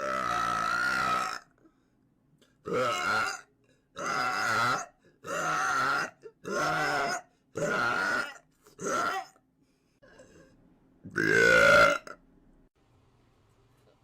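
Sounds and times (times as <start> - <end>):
woman burping loudly: 0.0 - 1.5, 11.1 - 12.2.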